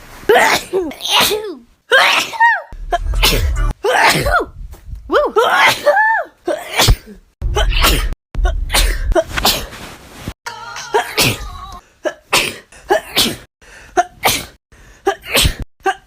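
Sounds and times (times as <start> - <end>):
person sneezing: 0.3 - 2.6, 3.2 - 4.5, 5.4 - 9.7, 12.0 - 16.0.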